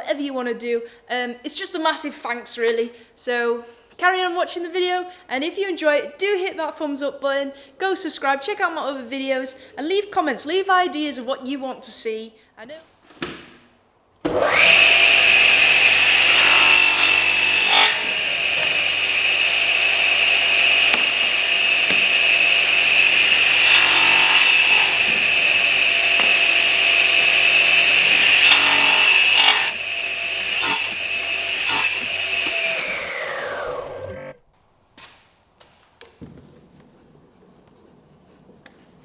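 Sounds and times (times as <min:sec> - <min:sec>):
power tool whining: 0:14.3 - 0:34.4
saw cutting into wood: 0:14.3 - 0:34.4.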